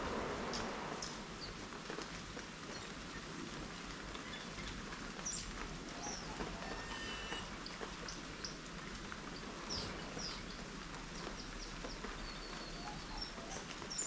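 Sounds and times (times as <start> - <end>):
light rain falling: 0.0 - 14.0
birds chirping: 4.2 - 14.0.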